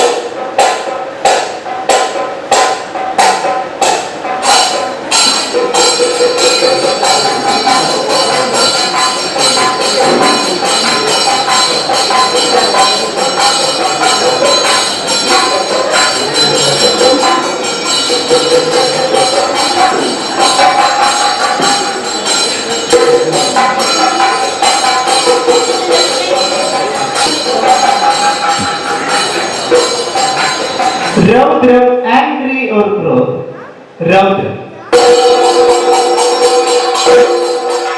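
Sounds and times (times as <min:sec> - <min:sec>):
hand cymbals ringing: 0:00.0 - 0:31.4, 0:34.8 - 0:37.9
drums: 0:00.0 - 0:31.7, 0:34.8 - 0:37.9.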